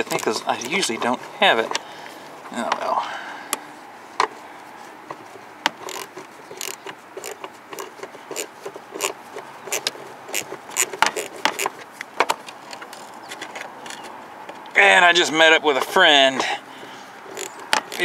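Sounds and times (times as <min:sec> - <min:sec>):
ratchet wrench clicking: 0:05.8 - 0:11.7, 0:17.3 - 0:18.0.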